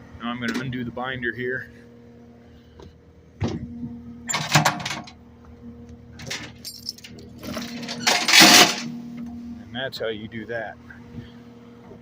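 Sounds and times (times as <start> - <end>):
steady low hum: 0.0 - 12.0
metal chain clanking and rattling: 4.3 - 5.2, 6.2 - 8.9.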